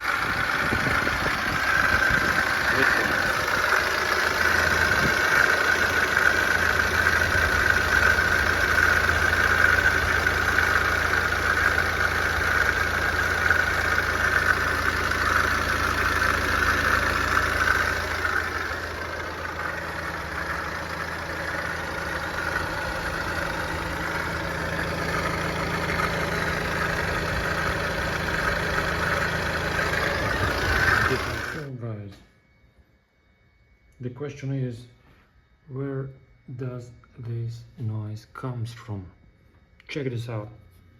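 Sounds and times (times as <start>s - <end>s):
diesel engine idling: 0.0s - 31.7s
high-pitched pump whine: 0.0s - 40.9s.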